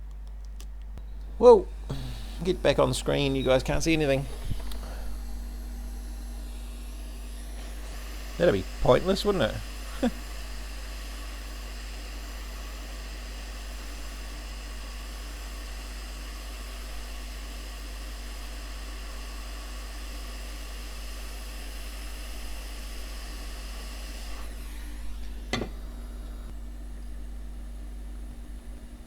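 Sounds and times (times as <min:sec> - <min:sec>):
hot air blower hissing: 0:01.2 - 0:29.0.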